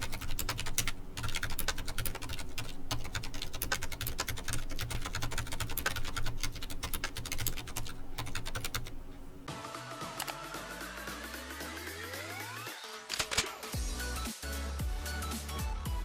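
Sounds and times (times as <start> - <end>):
fast typing on mechanical keyboard: 0.0 - 9.5, 13.1 - 13.5
music: 9.5 - 16.0.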